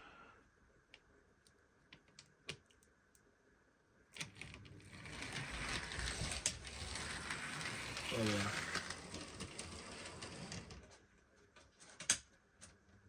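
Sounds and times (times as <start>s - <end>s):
model train motor whirring: 5.0s - 10.8s.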